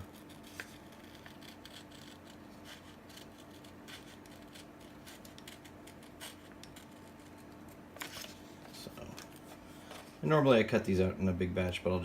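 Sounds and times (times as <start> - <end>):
scissors snipping paper: 0.0 - 7.6.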